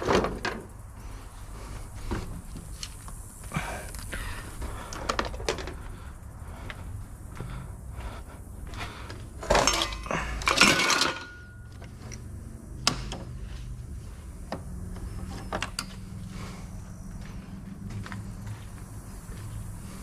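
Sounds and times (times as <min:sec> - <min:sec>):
scrap metal clattering: 0:09.4 - 0:11.7
metal clinks and knocks: 0:09.4 - 0:12.3.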